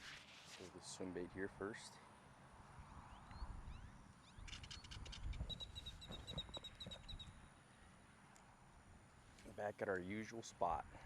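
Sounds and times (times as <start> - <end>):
small bird calling: 3.0 - 7.5.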